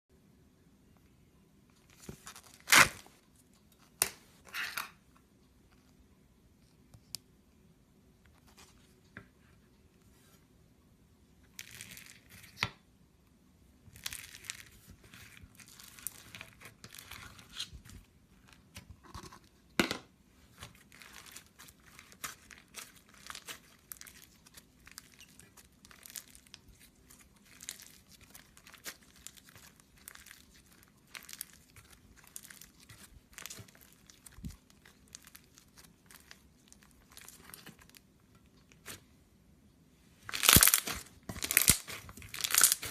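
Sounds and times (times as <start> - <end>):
crunchy slime crackling: 13.9 - 18.8, 20.5 - 39.0, 40.2 - 42.9.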